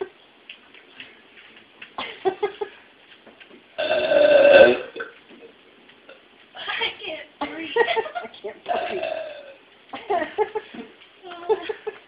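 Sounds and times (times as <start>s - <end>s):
loud long burp: 3.8s - 5.1s, 8.7s - 9.6s.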